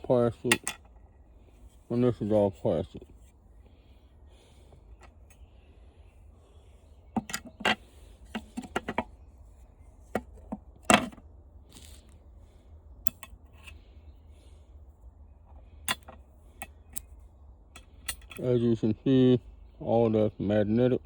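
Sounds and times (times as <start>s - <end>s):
fan parts knocking and clicking: 0.0s - 1.1s, 7.1s - 9.1s, 10.1s - 11.2s, 15.8s - 17.1s.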